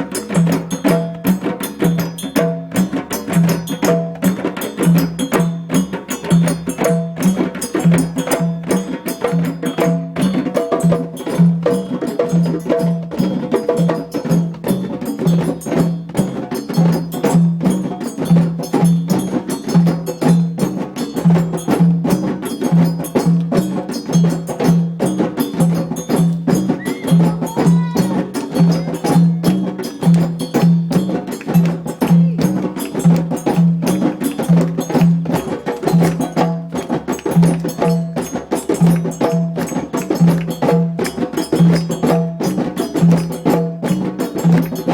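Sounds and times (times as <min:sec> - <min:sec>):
djembe drumming: 0:00.0 - 0:44.9.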